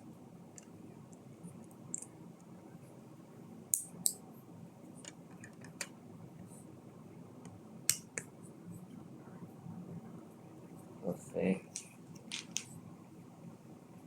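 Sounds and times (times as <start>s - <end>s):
plastic pieces clicking together: 12.3s - 12.6s.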